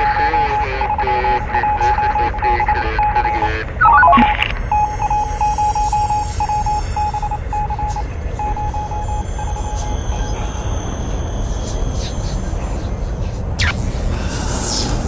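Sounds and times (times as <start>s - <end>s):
electronic dialling tones: 3.8s - 4.5s
garbled radio voice: 3.8s - 4.5s
morse code beeping tone: 3.8s - 4.5s.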